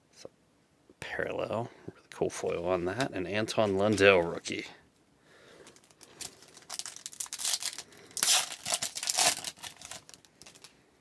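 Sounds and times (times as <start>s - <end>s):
card pack wrapper tearing and crinkling: 5.8s - 10.7s.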